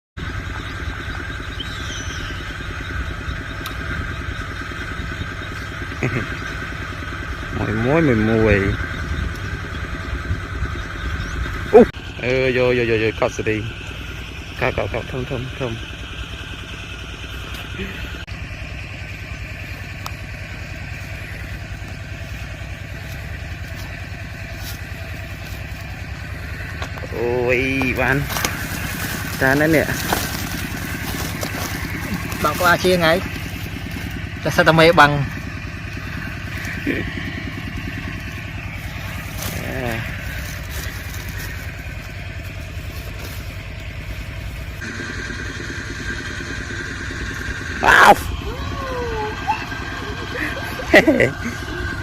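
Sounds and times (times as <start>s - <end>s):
small engine chugging: 0.2s - 52.0s.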